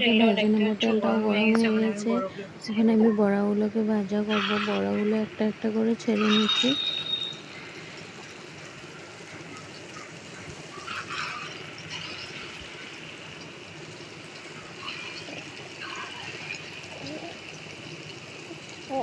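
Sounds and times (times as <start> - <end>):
batter sizzling in hot oil: 6.2 - 19.0.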